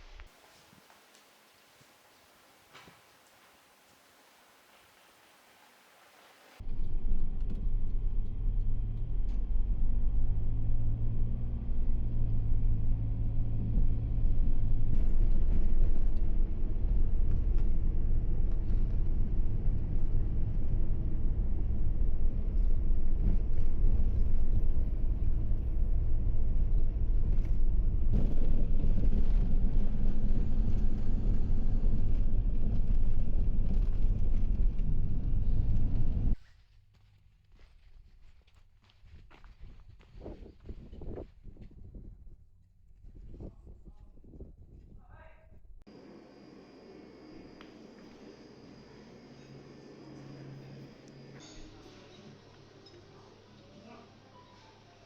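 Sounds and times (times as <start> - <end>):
low road rumble: 6.6 - 36.4
vehicle engine running: 6.6 - 36.4.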